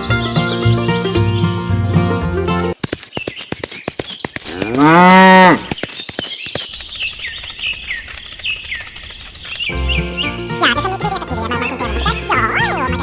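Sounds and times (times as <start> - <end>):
birds chirping: 0.0 - 2.3, 2.9 - 13.0
music: 0.0 - 2.8, 9.7 - 13.0
sharp clicks: 2.8 - 9.7
cow mooing: 4.5 - 5.7.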